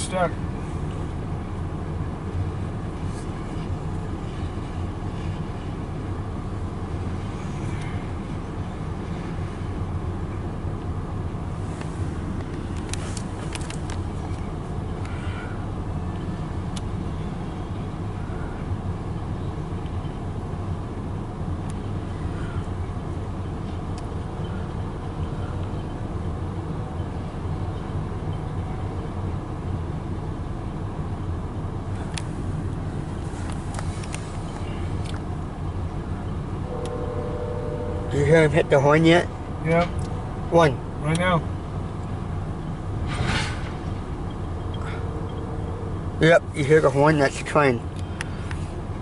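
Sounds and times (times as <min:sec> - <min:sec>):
freight train rumbling past: 0:34.6 - 0:49.0.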